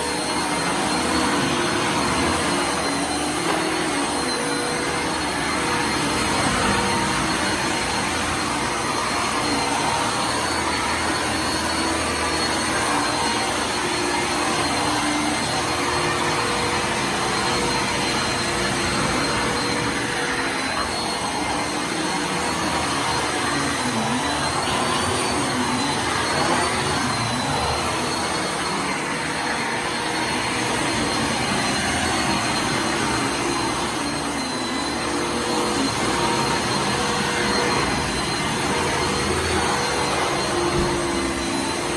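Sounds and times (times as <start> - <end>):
vacuum cleaner running: 0.0 - 41.9.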